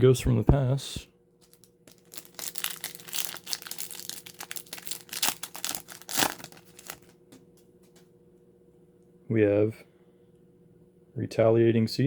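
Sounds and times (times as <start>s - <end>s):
foil wrapper crinkling and tearing: 1.4s - 7.1s.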